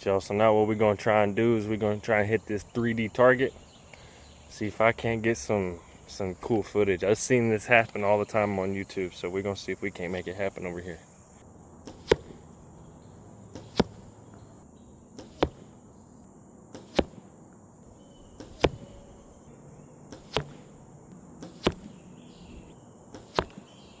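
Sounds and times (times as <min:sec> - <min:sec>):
arrow striking foam target: 0:11.9 - 0:12.4, 0:13.6 - 0:14.1, 0:15.2 - 0:15.8, 0:16.7 - 0:17.3, 0:18.4 - 0:19.0, 0:20.1 - 0:20.8, 0:21.4 - 0:22.1, 0:23.1 - 0:23.8.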